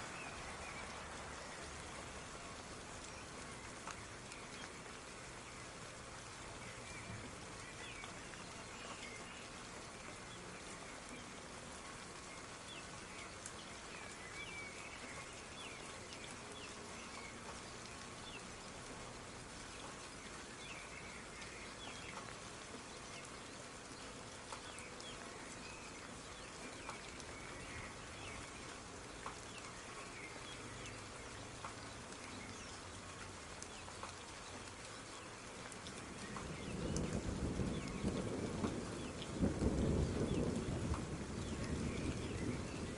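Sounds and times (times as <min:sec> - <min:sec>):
soft rain: 0:00.0 - 0:42.9.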